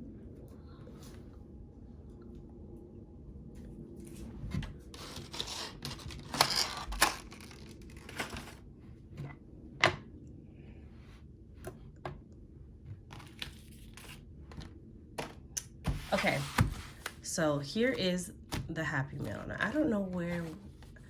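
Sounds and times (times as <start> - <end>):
packaging rustling: 5.0 - 8.6.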